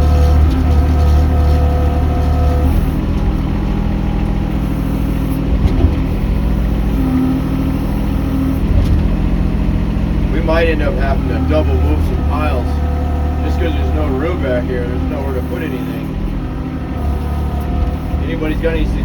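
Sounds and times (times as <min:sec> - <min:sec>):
excavator engine running: 0:00.0 - 0:19.0.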